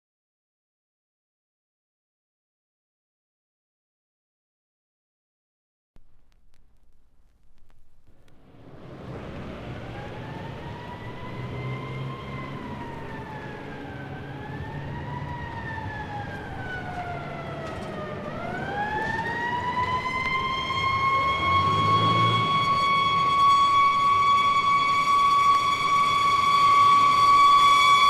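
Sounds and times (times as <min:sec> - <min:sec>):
low engine rumble: 0:06.0 - 0:25.1
siren wailing: 0:08.8 - 0:28.0.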